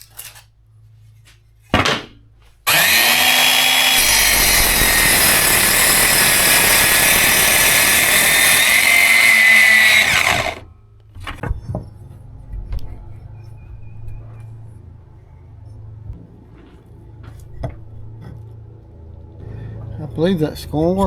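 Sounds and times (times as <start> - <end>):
power tool cutting wood: 2.7 - 10.6.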